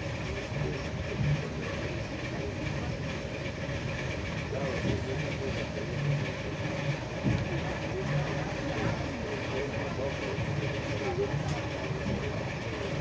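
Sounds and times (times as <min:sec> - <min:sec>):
train wheels rumbling on rail: 0:00.0 - 0:13.0.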